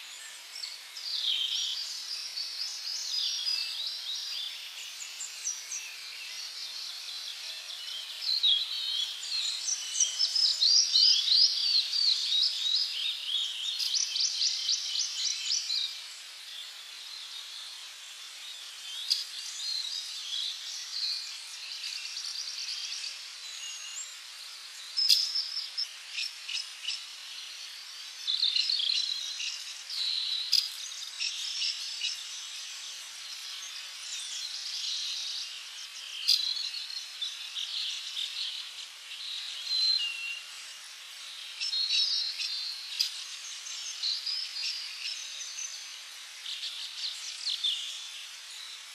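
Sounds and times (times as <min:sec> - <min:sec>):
insect chorus: 0:00.0 - 0:48.9
birds whistling and chirping: 0:07.6 - 0:16.0, 0:24.8 - 0:27.1, 0:33.4 - 0:40.5.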